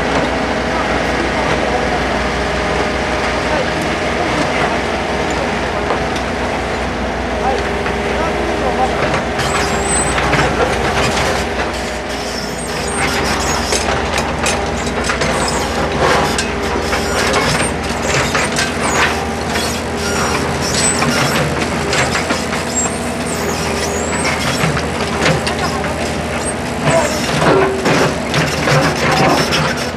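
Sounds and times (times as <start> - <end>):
construction machine engine running: 0.0 - 29.9
clatter and scraping of tools: 9.0 - 29.9.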